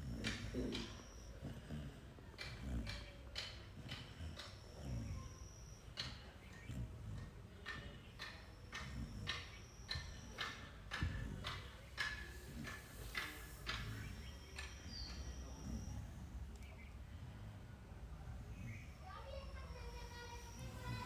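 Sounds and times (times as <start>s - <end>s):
dog snoring: 0.0s - 16.5s, 19.6s - 21.0s.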